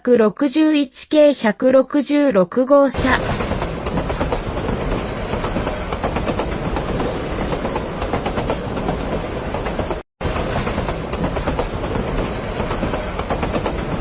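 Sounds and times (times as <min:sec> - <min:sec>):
streetcar wheels rattling on track: 0:03.0 - 0:14.0.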